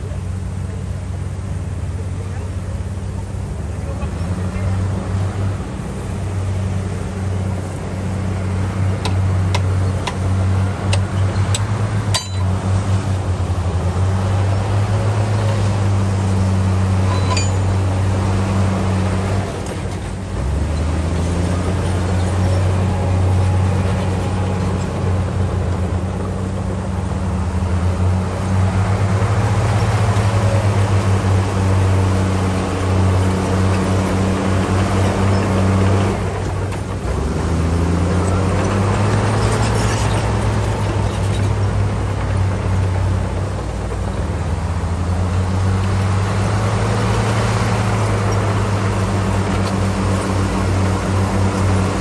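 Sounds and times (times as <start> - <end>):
bulldozer diesel engine droning: 0.0 - 52.0
sharp metallic clinks: 11.2 - 12.6, 17.0 - 17.8.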